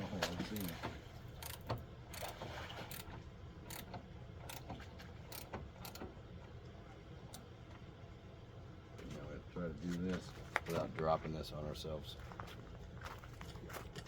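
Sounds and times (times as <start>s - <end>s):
light mechanical clicks and taps: 0.2s - 7.8s.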